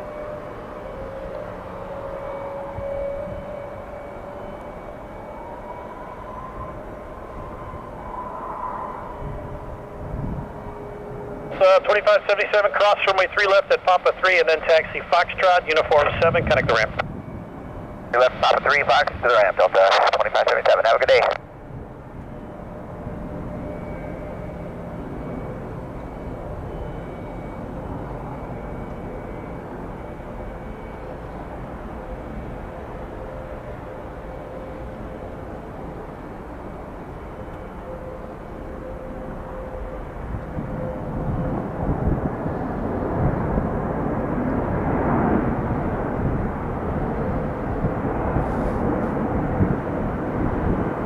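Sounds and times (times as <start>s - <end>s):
jet engine noise: 0.0s - 51.0s.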